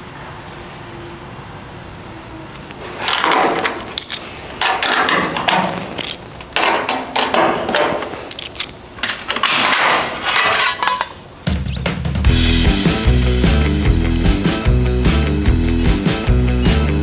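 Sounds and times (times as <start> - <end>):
power tool cutting sheet metal: 11.5 - 17.0.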